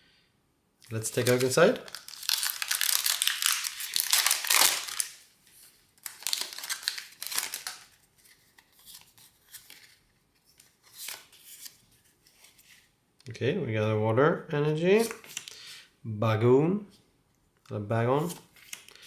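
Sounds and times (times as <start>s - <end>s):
foil wrapper crinkling: 0.9s - 11.8s
cards rustling: 0.9s - 12.9s, 15.0s - 15.8s, 18.2s - 19.0s.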